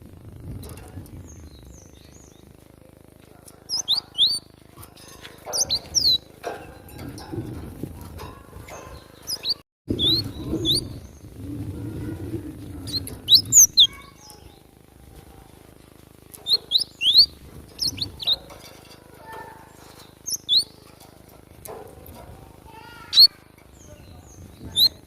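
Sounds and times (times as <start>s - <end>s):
low rumbling noise: 0.0s - 25.0s
bird chirping: 3.6s - 7.3s, 8.6s - 11.4s, 12.8s - 14.8s, 16.3s - 21.1s, 23.0s - 25.0s.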